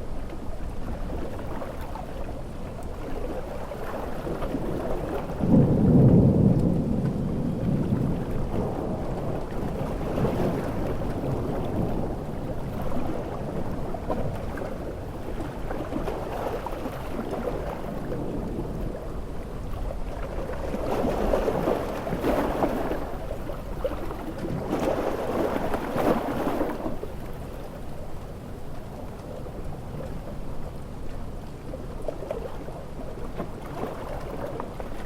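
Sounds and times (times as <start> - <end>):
ocean waves washing in: 0.0 - 35.0
heavy rain: 5.3 - 14.3.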